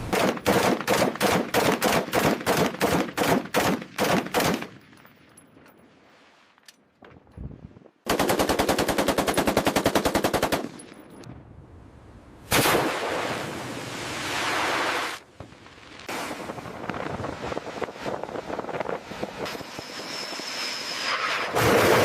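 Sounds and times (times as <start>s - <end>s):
automatic gunfire: 0.1s - 4.7s, 8.1s - 10.8s.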